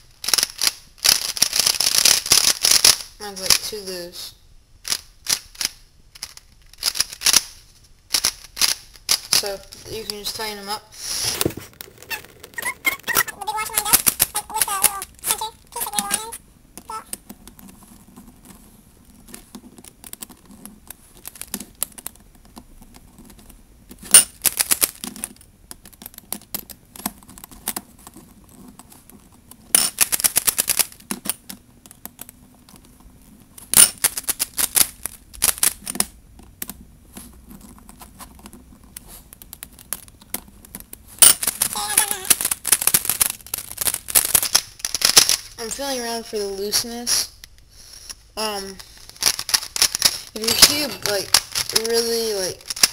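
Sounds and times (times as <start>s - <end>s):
puzzle cube pieces clacking: 0.2s - 3.8s, 4.8s - 52.9s.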